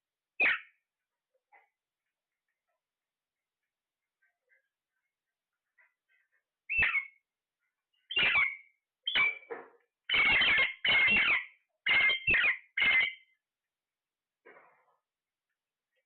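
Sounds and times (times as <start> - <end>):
parrot squawking: 0.4 - 0.8, 5.6 - 7.2, 7.9 - 9.5, 10.1 - 13.4.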